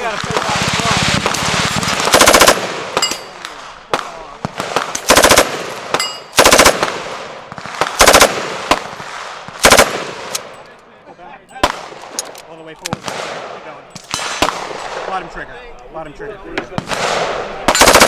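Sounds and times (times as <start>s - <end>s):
automatic gunfire bursts: 0.3s - 3.1s, 4.6s - 7.1s, 7.8s - 9.0s, 9.6s - 10.5s, 16.9s - 18.0s.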